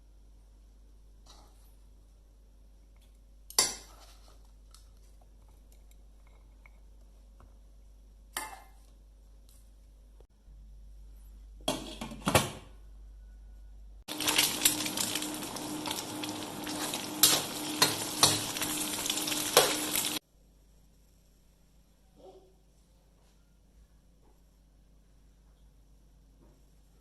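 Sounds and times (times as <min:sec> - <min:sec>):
food sizzling in a hot pan: 0:14.1 - 0:20.2.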